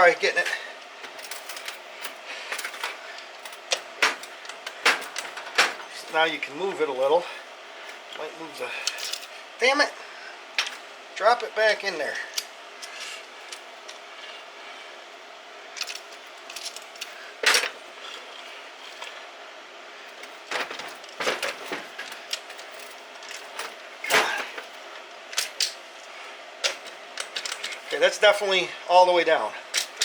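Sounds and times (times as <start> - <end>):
metal engine parts clinking: 26.6 - 28.0.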